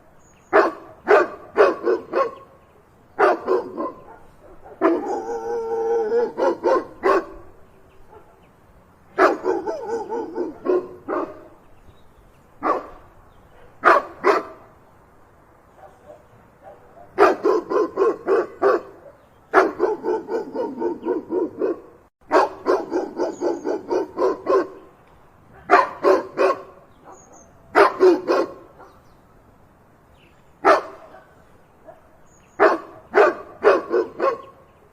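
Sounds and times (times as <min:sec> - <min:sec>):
dog barking: 0:00.5 - 0:02.5, 0:03.2 - 0:07.5, 0:08.1 - 0:08.4, 0:09.2 - 0:11.5, 0:12.6 - 0:14.6, 0:15.7 - 0:24.8, 0:25.5 - 0:29.0, 0:30.6 - 0:34.6.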